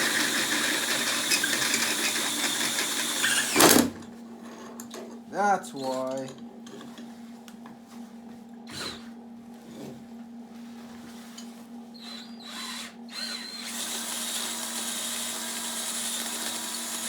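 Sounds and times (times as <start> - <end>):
power drill whirring: 0.0 - 4.0, 8.7 - 9.1, 12.0 - 17.0.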